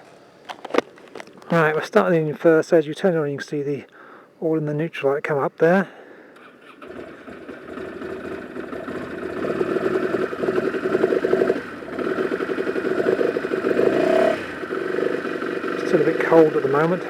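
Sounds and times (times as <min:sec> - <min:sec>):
motorcycle engine starting and idling: 0:06.4 - 0:17.0.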